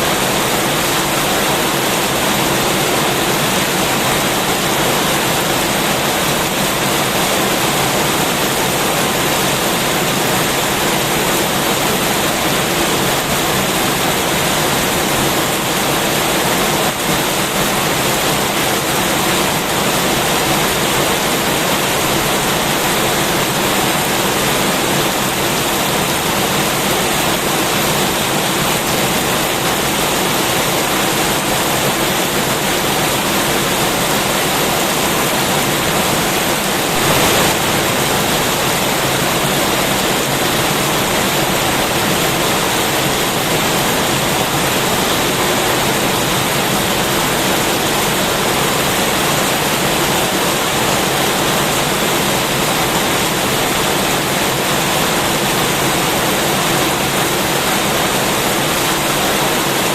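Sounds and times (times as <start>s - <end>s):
heavy rain pouring: 0.0s - 59.9s.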